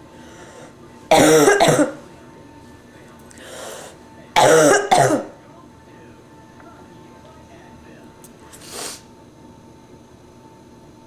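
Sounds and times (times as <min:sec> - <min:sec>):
person coughing hard: 0:01.1 - 0:02.0, 0:04.4 - 0:05.4
breath drawn in: 0:08.6 - 0:09.0.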